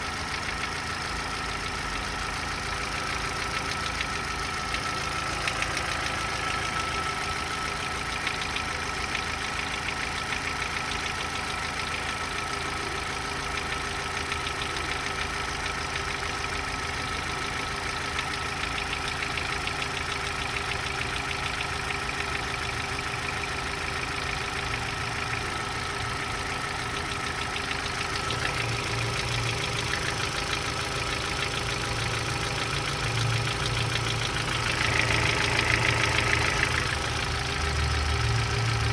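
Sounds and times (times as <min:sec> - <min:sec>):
car engine idling with knock: 0:00.0 - 0:38.9.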